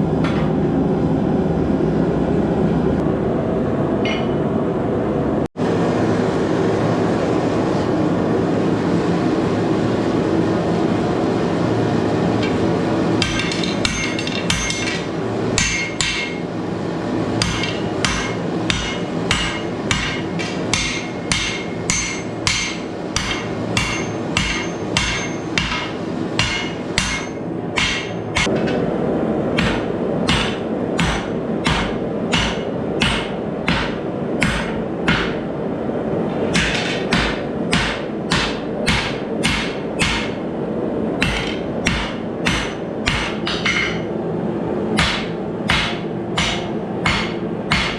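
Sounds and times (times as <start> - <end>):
hammer striking steel on anvil: 4.0 - 4.5, 13.2 - 16.5, 17.4 - 28.8, 29.5 - 35.4, 36.5 - 40.5, 41.2 - 44.1, 45.0 - 47.9.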